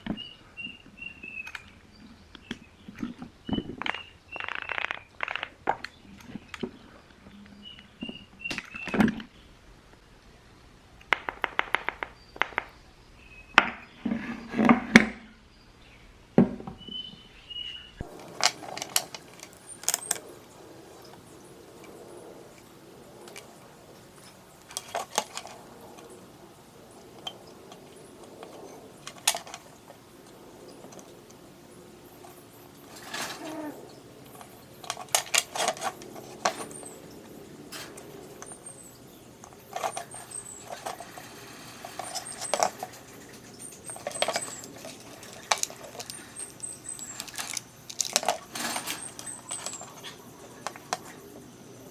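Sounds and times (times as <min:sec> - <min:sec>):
small hard objects clinking: 0:18.0 - 0:51.9.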